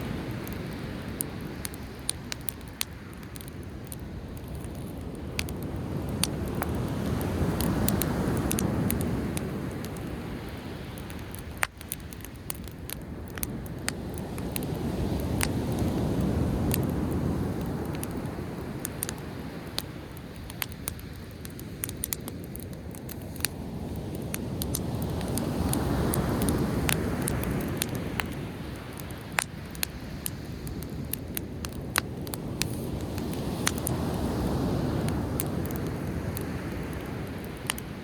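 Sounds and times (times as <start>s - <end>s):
campfire crackling and popping: 0.0s - 38.0s
sea waves rushing: 23.6s - 30.6s, 31.8s - 38.0s.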